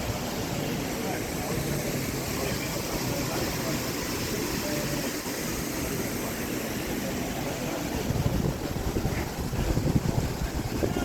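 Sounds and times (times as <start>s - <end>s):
wind buffeting microphone: 8.0s - 11.0s.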